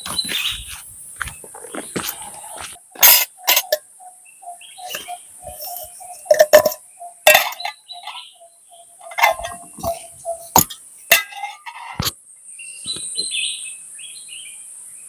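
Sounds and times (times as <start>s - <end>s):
hard objects clinking and knocking: 3.0s - 3.8s, 4.9s - 8.2s, 9.0s - 12.1s.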